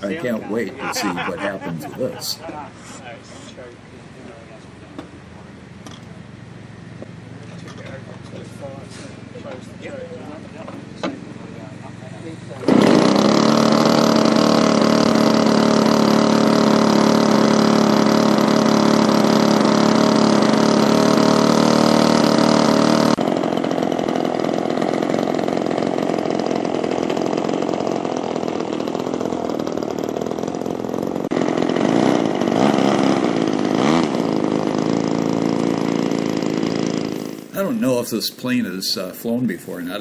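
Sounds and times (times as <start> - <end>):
model plane engine drone: 9.5 - 37.6.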